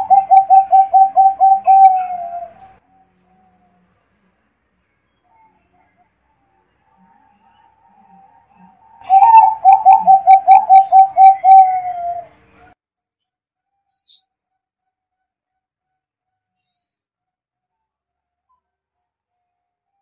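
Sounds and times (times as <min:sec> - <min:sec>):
dove cooing: 0:00.0 - 0:02.8, 0:07.2 - 0:12.4.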